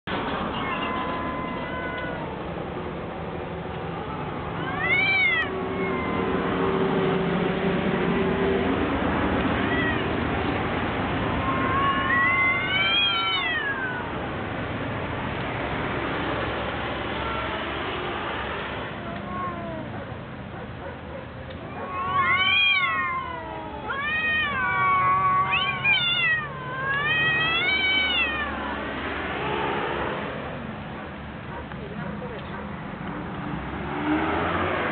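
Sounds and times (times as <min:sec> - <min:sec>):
cats yowling in a fight: 0:00.5 - 0:02.5, 0:03.9 - 0:06.6, 0:09.5 - 0:10.4, 0:11.1 - 0:14.4, 0:16.9 - 0:17.8, 0:18.8 - 0:28.8.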